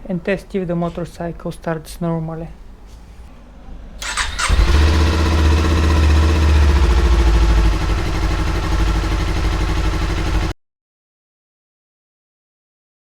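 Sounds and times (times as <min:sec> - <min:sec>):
motorcycle engine starting and idling: 0:04.0 - 0:10.6.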